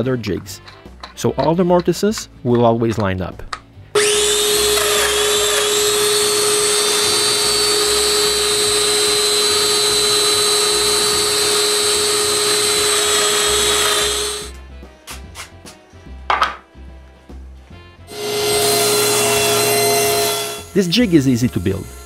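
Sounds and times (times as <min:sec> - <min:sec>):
power tool motor whining: 0:04.0 - 0:14.5, 0:18.1 - 0:22.0.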